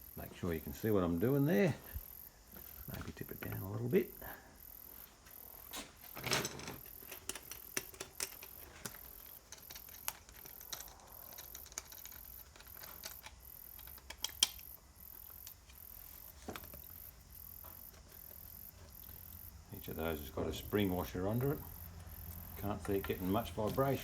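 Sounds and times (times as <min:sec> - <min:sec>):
faint pulsing high whine: 0:00.0 - 0:24.0
spanner and bolts clicking: 0:05.3 - 0:24.0.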